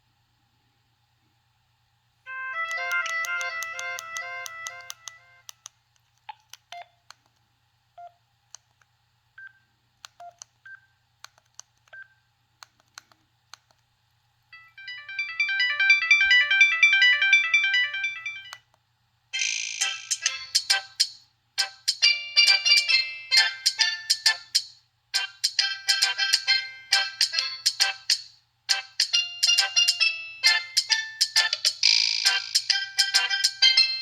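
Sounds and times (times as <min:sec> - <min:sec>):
electronic ringtone melody: 0:02.3 - 0:05.4, 0:14.6 - 0:18.6, 0:19.4 - 0:24.5, 0:28.7 - 0:34.0
phone ringtone blips and clicks: 0:02.3 - 0:05.5, 0:14.6 - 0:18.6, 0:19.4 - 0:21.1.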